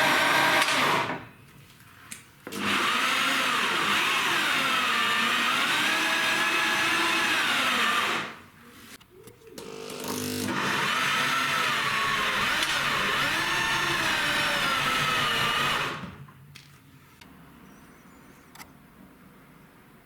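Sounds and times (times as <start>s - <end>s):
power tool motor running: 2.5s - 8.4s, 9.6s - 16.2s.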